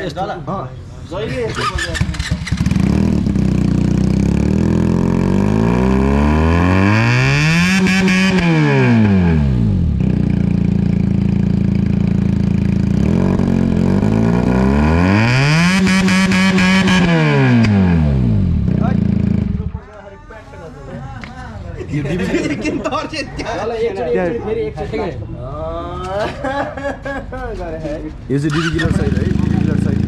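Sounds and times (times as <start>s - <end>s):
motorcycle engine revving: 1.4s - 19.8s, 28.5s - 30.0s.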